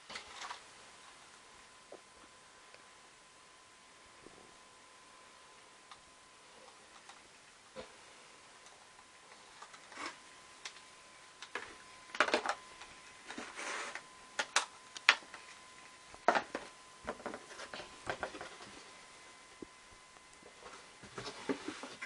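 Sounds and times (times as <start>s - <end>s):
clicks taps and rustles of handling: 8.6s - 18.8s.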